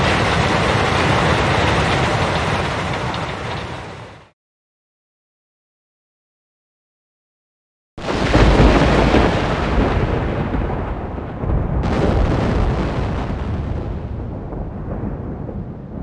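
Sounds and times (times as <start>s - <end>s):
thunder crack and rumble: 0.0s - 4.2s, 8.0s - 16.0s.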